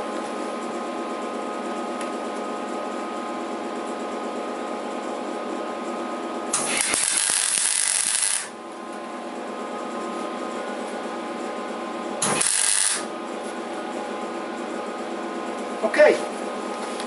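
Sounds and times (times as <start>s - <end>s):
steady machine hum: 0.0s - 17.0s
welding arc crackling and hissing: 6.6s - 8.6s, 12.2s - 13.1s.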